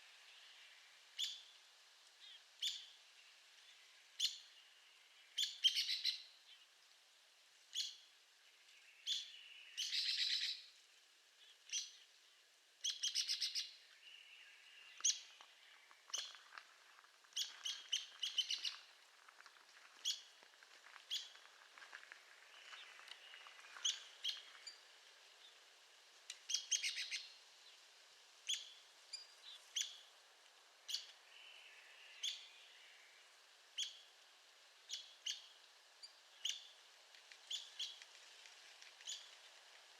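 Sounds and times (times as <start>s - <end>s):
woodpecker call notes: 26.5s - 27.3s.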